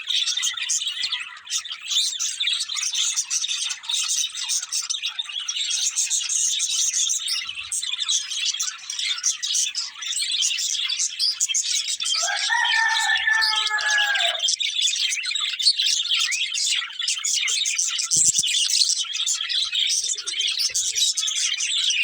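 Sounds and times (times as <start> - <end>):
budgerigars chirping and chattering: 0.0 - 22.0
low drawn-out bird call: 12.2 - 14.4.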